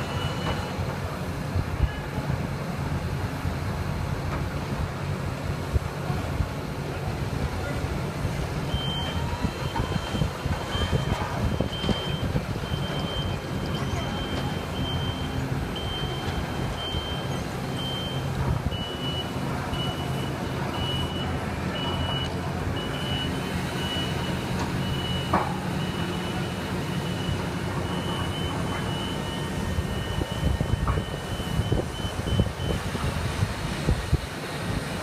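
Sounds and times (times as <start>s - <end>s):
diesel engine running: 0.0s - 35.0s
backup alarm beeping: 8.7s - 33.0s.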